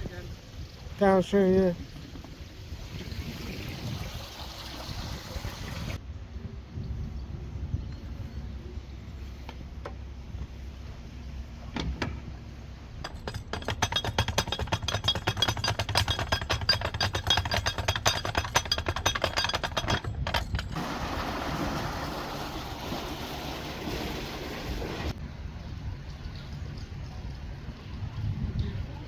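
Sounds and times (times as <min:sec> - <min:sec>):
wind noise on microphone: 0:01.6 - 0:11.1, 0:24.0 - 0:29.0
fast clattering rattle: 0:13.0 - 0:20.8.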